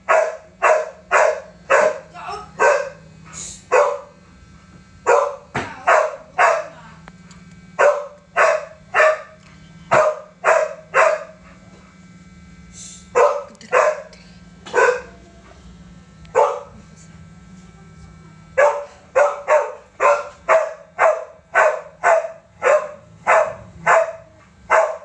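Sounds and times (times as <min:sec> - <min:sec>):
dog barking: 0:00.0 - 0:03.1, 0:03.7 - 0:04.2, 0:05.0 - 0:06.8, 0:07.8 - 0:11.4, 0:13.2 - 0:14.1, 0:14.7 - 0:15.2, 0:16.3 - 0:16.8, 0:18.6 - 0:25.0.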